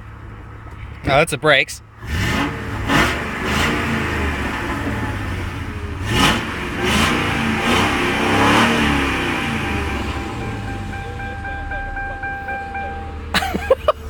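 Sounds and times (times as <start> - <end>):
car engine revving: 0.8 - 14.0
mufflers rattling: 2.5 - 14.0.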